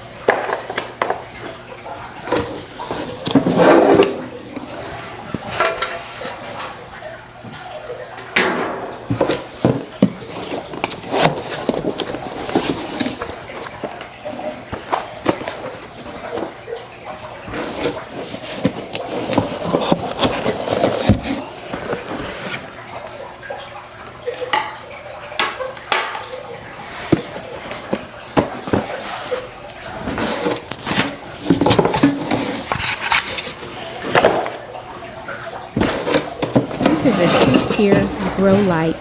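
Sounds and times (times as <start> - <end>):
parts knocking and clattering: 8.2 - 11.0.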